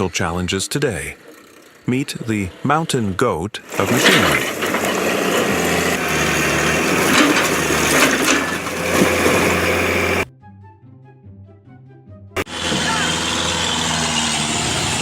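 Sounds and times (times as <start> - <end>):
heavy machine engine running: 0.0 - 10.3, 12.4 - 15.0
crunching and knocking: 3.7 - 10.2.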